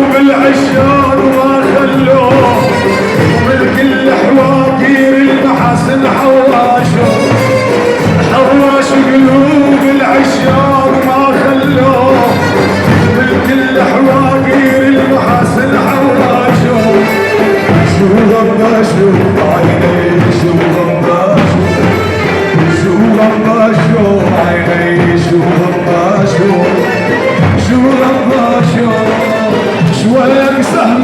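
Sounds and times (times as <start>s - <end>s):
amplified folk band playing: 0.0s - 31.0s.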